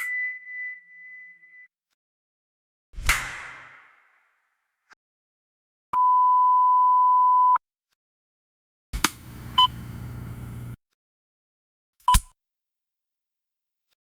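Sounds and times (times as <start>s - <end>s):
short beep: 6.0s - 7.6s
low electric hum: 9.0s - 10.8s
sharp click: 12.1s - 12.3s.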